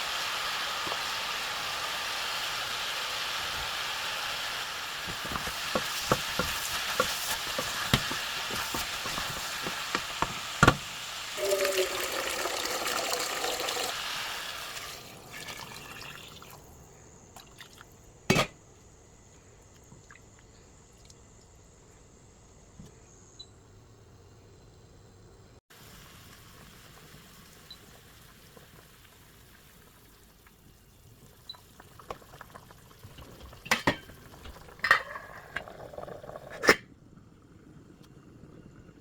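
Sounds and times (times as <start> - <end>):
pot sizzling: 0.0 - 16.7, 25.7 - 36.8.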